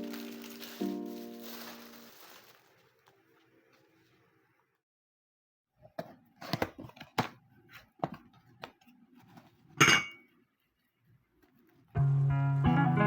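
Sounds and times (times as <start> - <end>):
ringing dish clink: 9.8 - 10.2
dishes and utensils clinking: 9.8 - 10.3.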